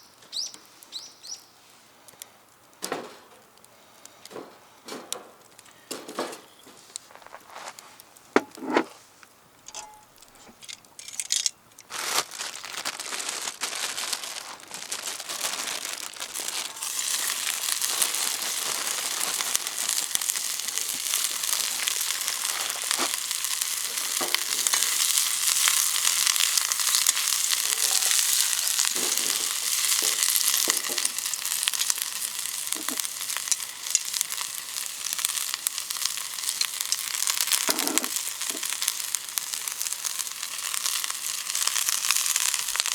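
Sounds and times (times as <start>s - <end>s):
food sizzling in a wok: 15.2s - 42.9s.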